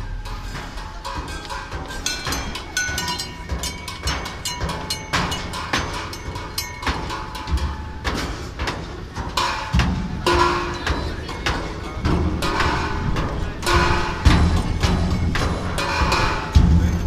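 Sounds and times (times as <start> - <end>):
percussion on metal wall and bins: 0.0 - 17.0.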